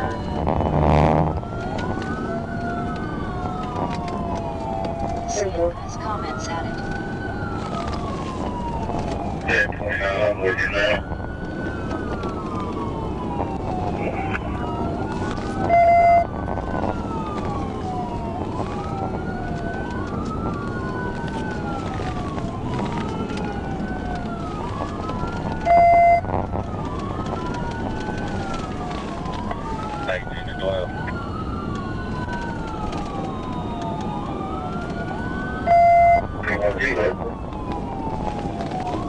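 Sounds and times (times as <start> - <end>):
police sirens wailing: 0.0 - 39.0
road noise: 0.0 - 39.0
loud steady tone: 9.5 - 11.1, 15.7 - 16.9, 25.6 - 26.5, 35.7 - 37.4.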